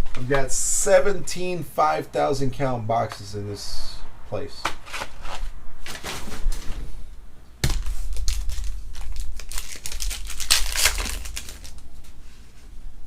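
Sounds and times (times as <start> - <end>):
plastic wrapping tearing and crinkling: 7.6 - 12.1.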